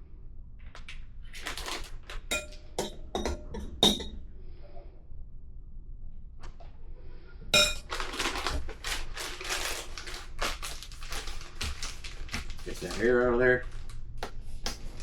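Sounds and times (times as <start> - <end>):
plastic bag crackling: 1.3 - 2.2, 7.6 - 14.2
utensil clinking on dish: 2.3 - 4.1, 7.6 - 8.0.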